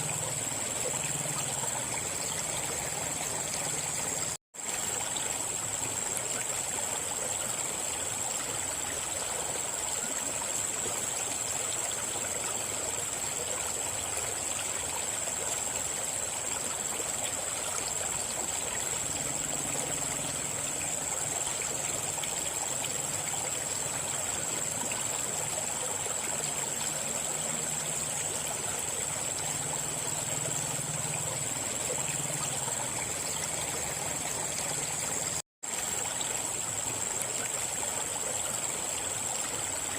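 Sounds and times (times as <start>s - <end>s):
river water flowing over rocks: 0.0s - 39.9s.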